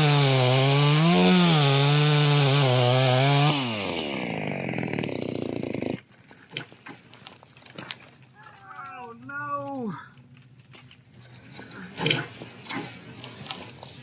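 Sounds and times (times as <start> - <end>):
chainsaw cutting: 0.0 - 7.1.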